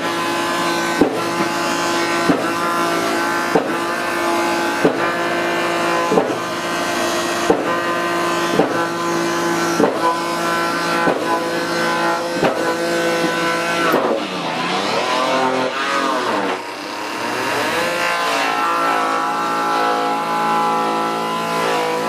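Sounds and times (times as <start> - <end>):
machine humming: 0.0 - 22.0.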